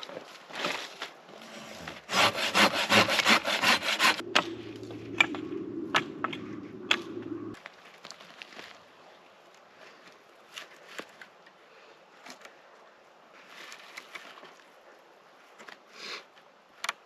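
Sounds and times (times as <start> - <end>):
hand saw cutting wood: 1.4 - 7.2
low hum: 2.0 - 7.6.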